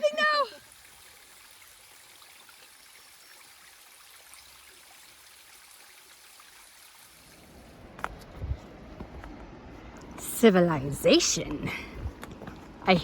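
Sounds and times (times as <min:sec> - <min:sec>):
faint stream rushing: 0:00.0 - 0:07.9.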